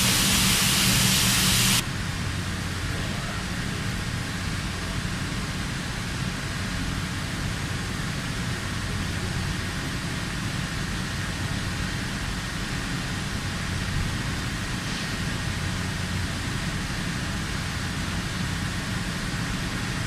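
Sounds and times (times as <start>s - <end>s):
faint high whine: 0.0s - 1.8s
machine tool humming and hissing: 0.0s - 1.8s.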